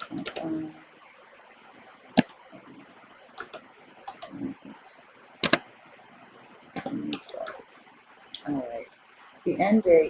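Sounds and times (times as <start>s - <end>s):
computer keyboard keystrokes: 2.2s - 2.4s, 3.4s - 4.3s, 5.4s - 5.6s, 6.8s - 7.6s.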